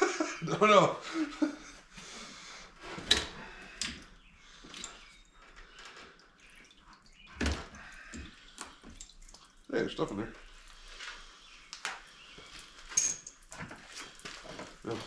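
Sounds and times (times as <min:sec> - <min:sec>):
clicks and knocks of tools: 0:03.0 - 0:04.1, 0:04.7 - 0:06.1.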